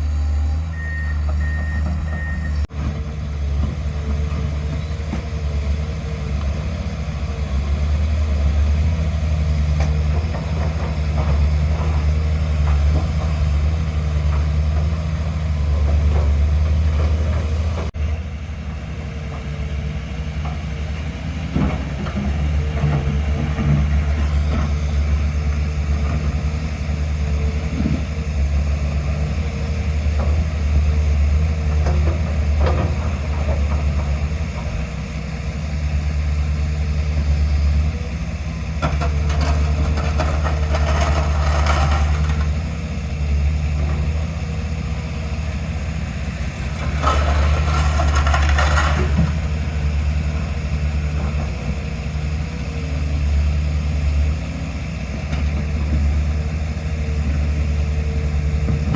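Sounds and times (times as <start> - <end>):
diesel engine running: 0.0 - 58.9
clattering and scraping: 39.0 - 42.5, 46.8 - 49.6.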